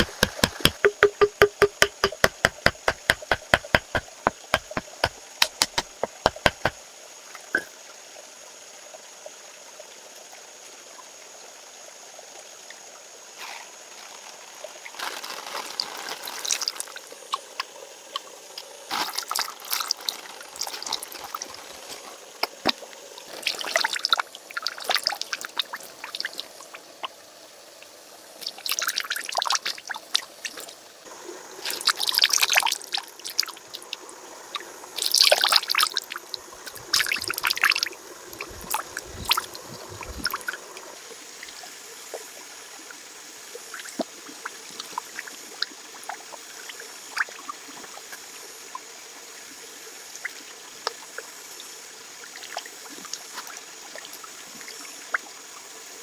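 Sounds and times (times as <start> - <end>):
rapid sharp knocks: 0.0 - 6.8.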